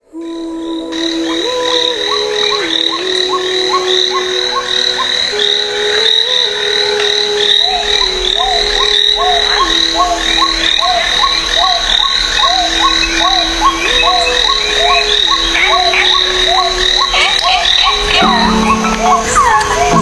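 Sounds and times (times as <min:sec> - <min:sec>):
low held tone: 0:00.2 - 0:20.0
steady high trill: 0:07.3 - 0:20.0.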